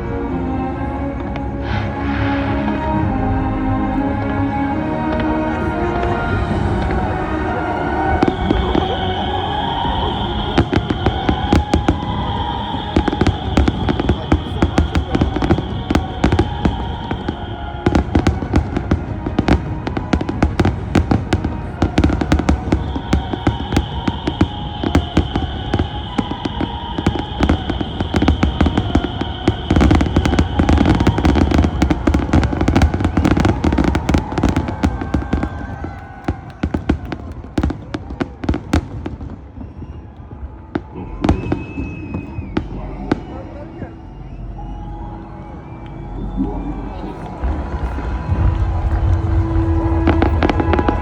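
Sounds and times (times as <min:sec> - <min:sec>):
music: 0:00.0 - 0:51.0
fireworks bangs and crackles: 0:01.3 - 0:44.0, 0:46.9 - 0:51.0
low rumble: 0:43.9 - 0:51.0.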